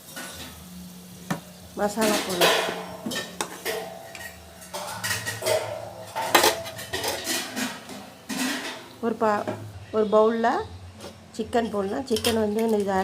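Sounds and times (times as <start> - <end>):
cookware clinking and knocking: 2.0 - 8.8, 11.7 - 13.0.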